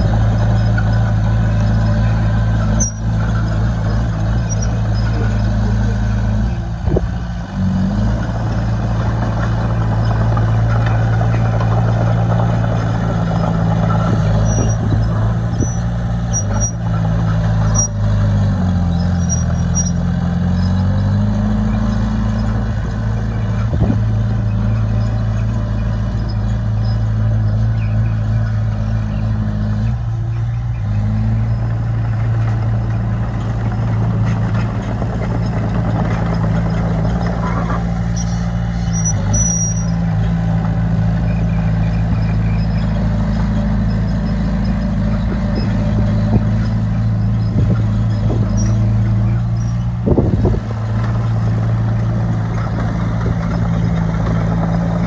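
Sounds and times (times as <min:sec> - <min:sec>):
bulldozer diesel engine running: 0:00.0 - 0:55.0.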